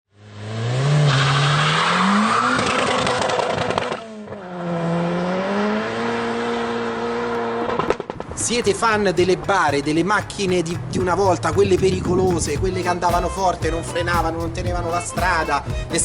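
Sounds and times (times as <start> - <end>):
race car engine accelerating: 0.2 - 8.3.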